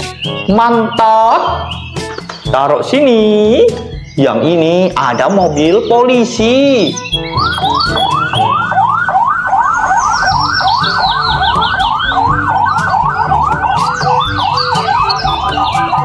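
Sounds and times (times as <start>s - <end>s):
police siren yelping: 6.7s - 16.0s.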